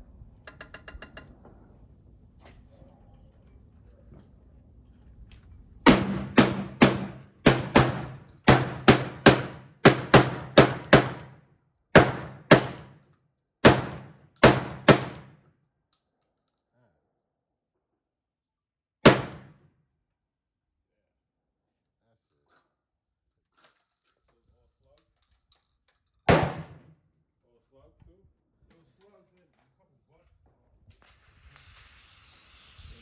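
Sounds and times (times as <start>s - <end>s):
gunshots with ringing echo: 5.9s - 11.3s, 12.0s - 12.9s, 13.6s - 15.3s, 19.1s - 19.5s, 26.3s - 26.8s.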